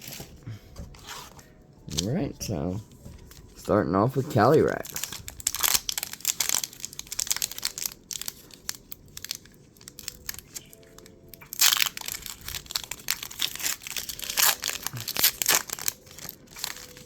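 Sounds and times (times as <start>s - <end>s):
cards being handled: 0.0s - 17.0s
foil wrapper crinkling: 1.9s - 17.0s.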